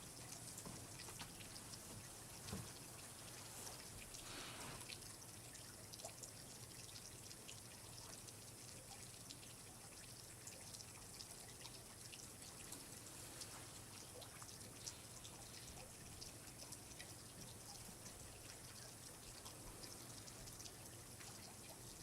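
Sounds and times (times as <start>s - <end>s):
steady quiet hiss: 0.0s - 22.0s
water dripping and trickling: 0.0s - 22.0s.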